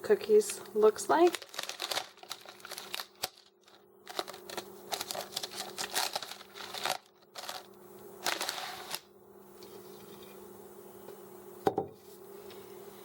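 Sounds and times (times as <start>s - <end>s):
plastic wrapper crinkling: 1.0s - 9.1s.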